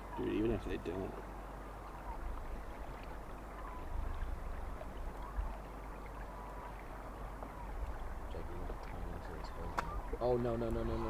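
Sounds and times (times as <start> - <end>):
faint steady hiss: 0.0 - 11.0.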